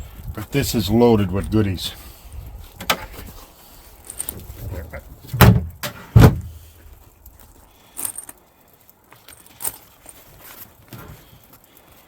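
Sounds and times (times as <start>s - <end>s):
loud thump: 5.4s - 6.5s
rummaging through a bag: 7.0s - 12.0s.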